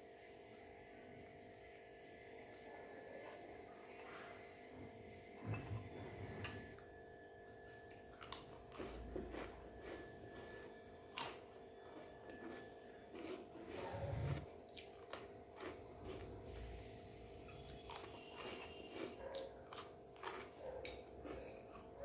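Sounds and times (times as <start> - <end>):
person chewing crunchy food: 7.8 - 16.7, 17.5 - 22.0.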